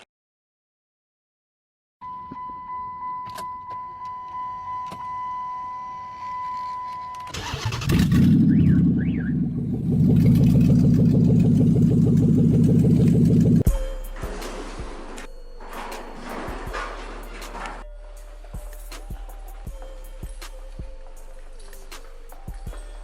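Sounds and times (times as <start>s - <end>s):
car engine starting and running: 7.3s - 13.7s.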